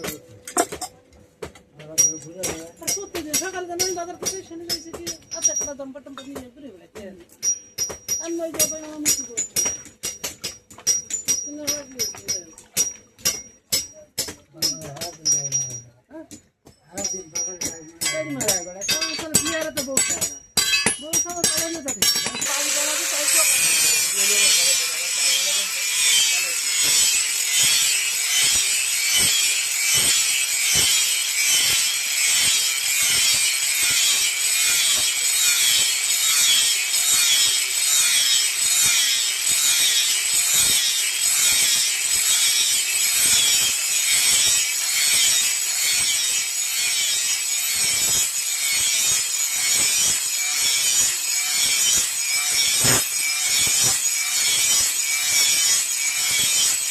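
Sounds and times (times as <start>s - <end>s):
file rasping on steel blade: 21.5s - 56.9s.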